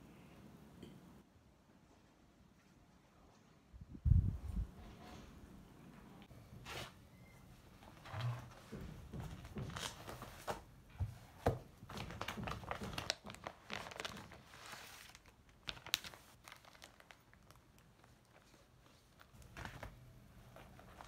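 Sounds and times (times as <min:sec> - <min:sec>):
packaging crinkling and rustling: 0:11.3 - 0:21.0.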